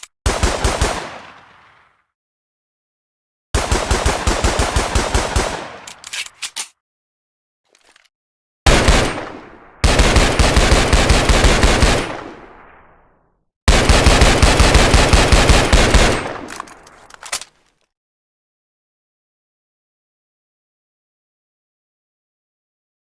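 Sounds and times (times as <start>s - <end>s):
rapid bursts of gunfire: 0.3s - 1.4s, 3.6s - 5.9s, 8.7s - 12.6s, 13.7s - 16.8s.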